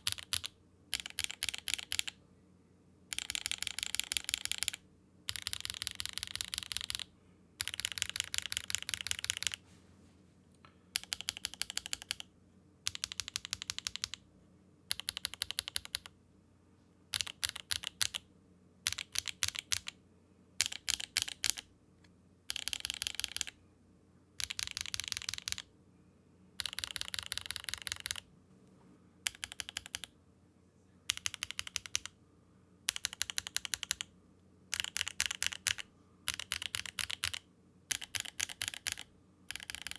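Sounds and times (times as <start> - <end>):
mechanical keyboard typing: 0.0 - 2.2, 3.1 - 9.6, 10.9 - 14.2, 14.9 - 16.2, 17.1 - 20.0, 20.6 - 21.7, 22.5 - 23.6, 24.4 - 25.7, 26.6 - 28.3, 29.2 - 30.1, 31.1 - 32.2, 32.9 - 34.1, 34.7 - 39.9.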